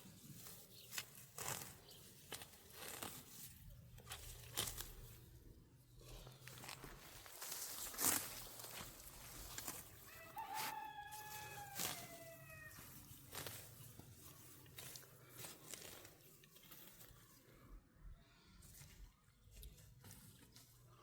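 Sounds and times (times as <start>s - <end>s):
rustling: 0.0s - 17.7s
rooster crowing: 10.0s - 12.9s.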